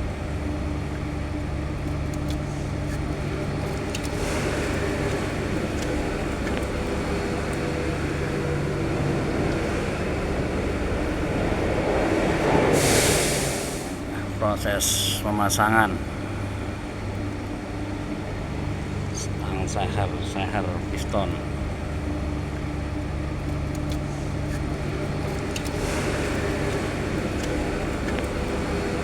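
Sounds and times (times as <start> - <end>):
low mechanical hum: 0.0 - 29.0
loud hiss: 12.7 - 14.0.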